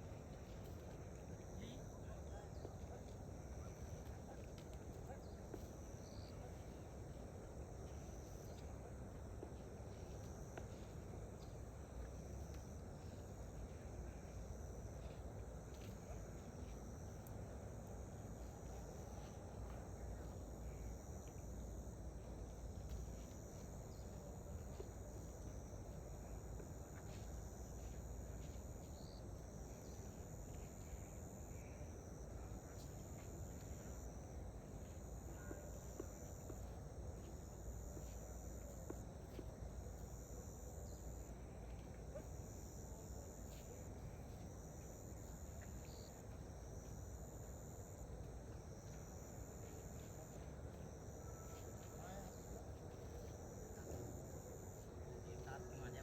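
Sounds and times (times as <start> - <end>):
insects chirring: 0.0 - 56.0.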